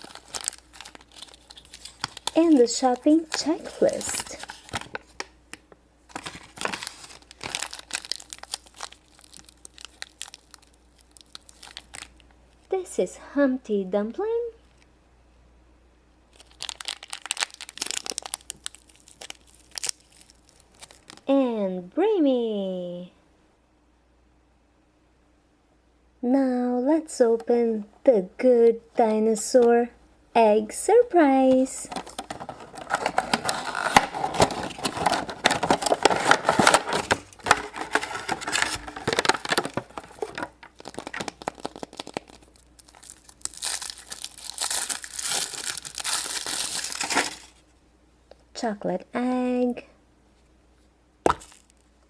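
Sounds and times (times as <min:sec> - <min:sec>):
plastic packaging crinkling: 0:00.0 - 0:12.6, 0:16.3 - 0:21.3, 0:31.5 - 0:47.7, 0:51.3 - 0:52.0.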